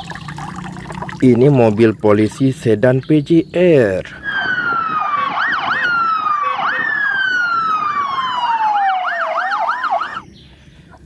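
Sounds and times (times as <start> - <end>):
electronic police siren: 4.2 - 10.2.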